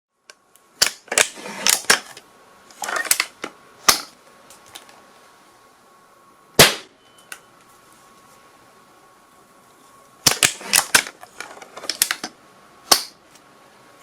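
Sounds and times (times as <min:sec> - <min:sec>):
gunshots: 0:06.6 - 0:06.9.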